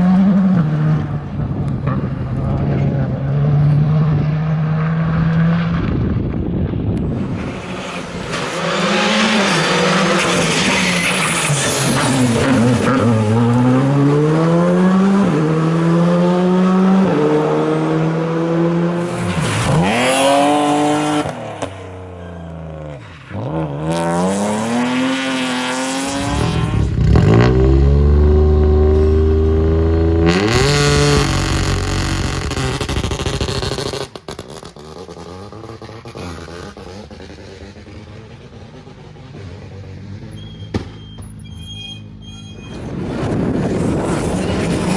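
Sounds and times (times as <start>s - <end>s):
rally car engine revving: 7.1s - 21.8s, 22.7s - 41.8s.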